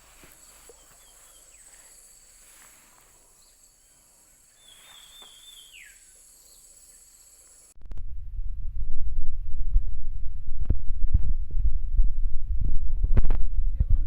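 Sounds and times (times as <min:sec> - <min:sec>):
insects trilling: 0:00.0 - 0:07.8.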